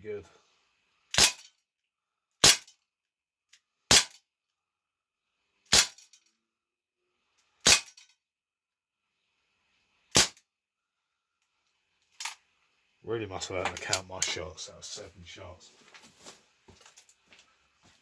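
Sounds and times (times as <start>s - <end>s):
air pistol shots: 1.1s - 1.5s, 2.4s - 2.7s, 3.9s - 4.2s, 5.7s - 6.0s, 7.6s - 7.9s, 10.1s - 10.4s.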